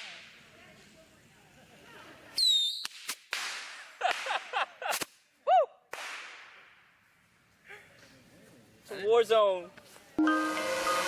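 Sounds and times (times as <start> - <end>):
bottle rocket whistle: 2.4 - 3.0
sharp cracking pops: 2.4 - 5.3, 5.9 - 7.0.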